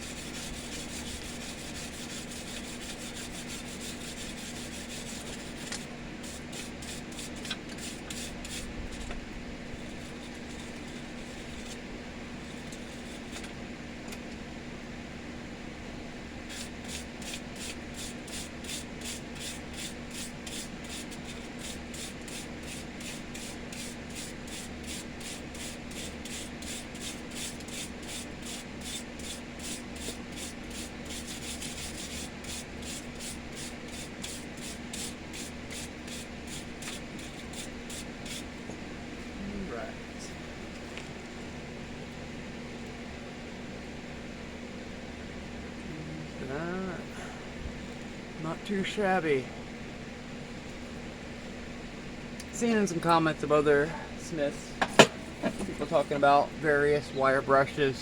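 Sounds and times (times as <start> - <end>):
wire brush scrubbing steel: 0.0 - 9.1, 16.5 - 38.5
steady low hum: 0.0 - 58.0.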